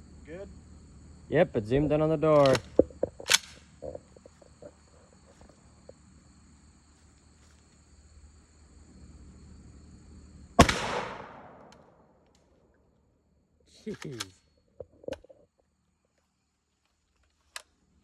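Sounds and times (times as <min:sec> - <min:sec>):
crickets chirping: 0:00.0 - 0:18.0
shotgun shot with echo: 0:10.6 - 0:12.0.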